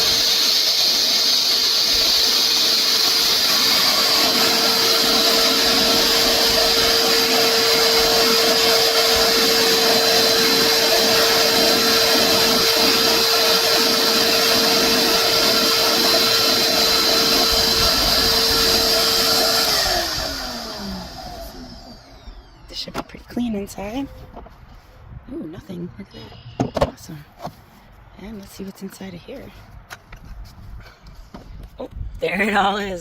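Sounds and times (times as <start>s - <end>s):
shop vacuum motor whine: 0.0s - 24.5s.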